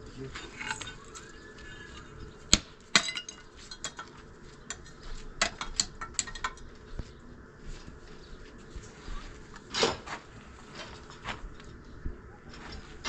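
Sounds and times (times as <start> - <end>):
hard objects clinking: 0.2 - 2.3, 2.9 - 6.8.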